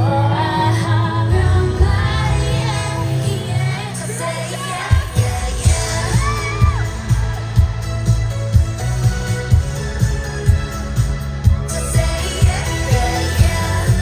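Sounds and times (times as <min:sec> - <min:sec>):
women singing pop music: 0:00.0 - 0:14.0
kick drum beat: 0:04.9 - 0:13.7.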